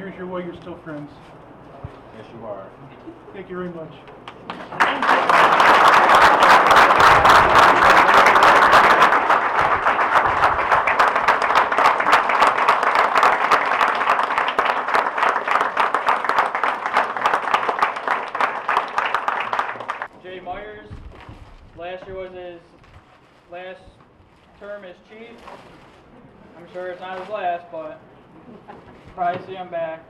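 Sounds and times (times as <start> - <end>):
crowd applauding: 4.4 - 20.1.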